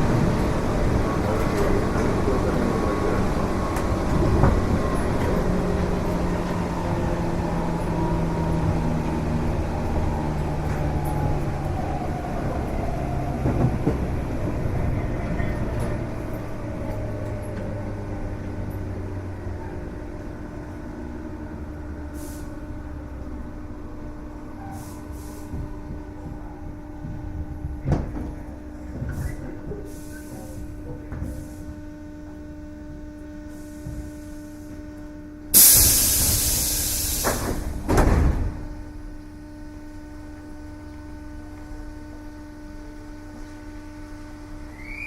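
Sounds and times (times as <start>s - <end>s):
electric train motor whine: 0.0s - 24.6s, 36.2s - 45.0s.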